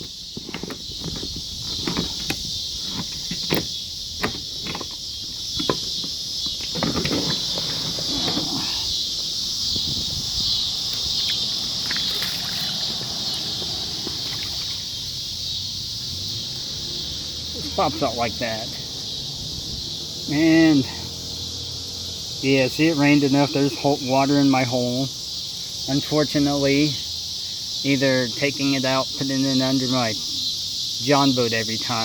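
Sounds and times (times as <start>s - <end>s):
insects droning: 0.0s - 32.0s.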